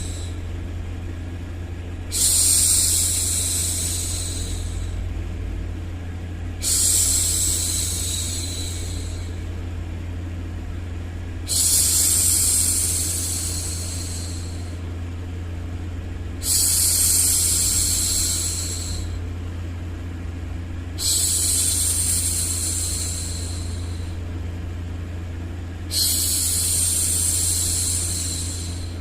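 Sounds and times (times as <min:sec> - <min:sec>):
low white-noise hum: 0:00.0 - 0:29.0.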